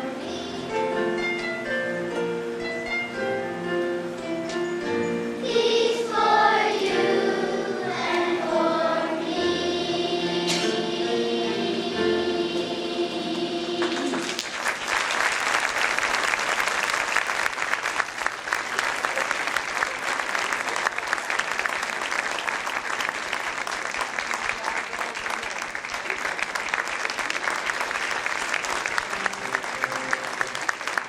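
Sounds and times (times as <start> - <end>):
audience applauding and cheering: 13.8 - 31.0.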